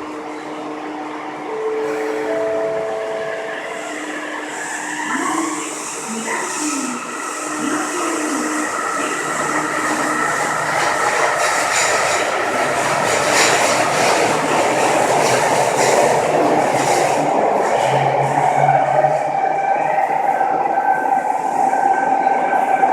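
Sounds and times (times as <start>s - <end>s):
train wheels rolling: 4.0s - 19.0s.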